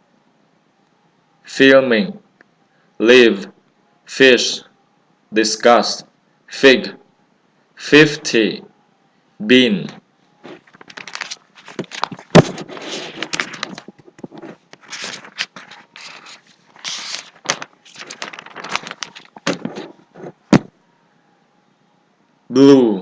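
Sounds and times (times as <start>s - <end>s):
rustling handling noises: 10.4s - 20.7s
sharp knocks: 20.4s - 20.7s.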